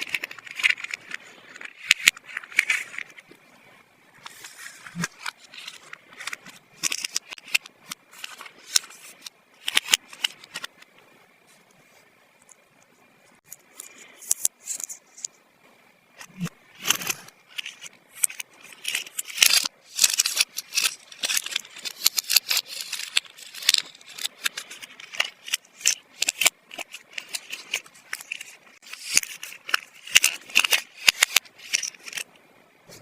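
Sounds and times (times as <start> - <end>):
plastic toy pieces clicking: 0.0 - 3.1, 4.9 - 10.7, 16.4 - 32.3
packaging crinkling: 0.0 - 3.2, 16.3 - 32.3.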